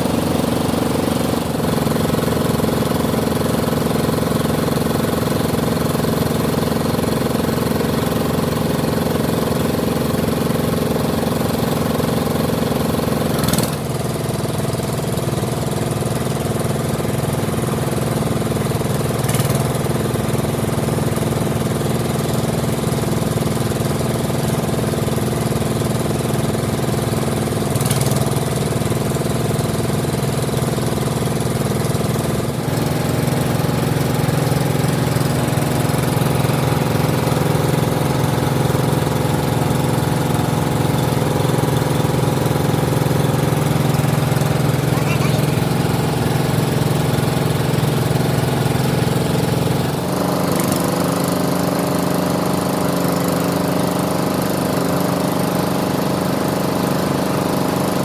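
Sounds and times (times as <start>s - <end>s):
machinery humming: 32.5s - 48.8s.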